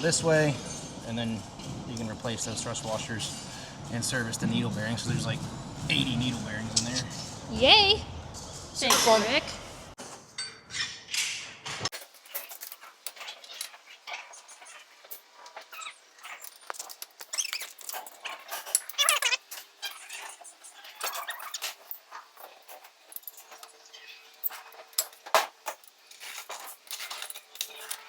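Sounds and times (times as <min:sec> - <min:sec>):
metal parts and tools clinking: 0:10.2 - 0:28.0.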